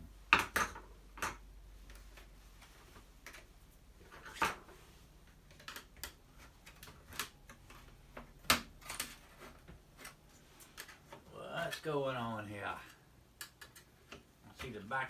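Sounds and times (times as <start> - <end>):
plastic and metal parts clicking: 5.4 - 9.4.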